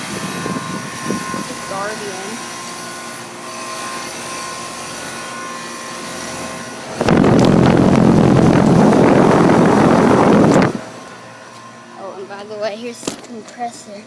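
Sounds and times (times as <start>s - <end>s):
air conditioner humming: 0.0s - 14.0s
loud rushing rumbling noise: 6.8s - 11.0s.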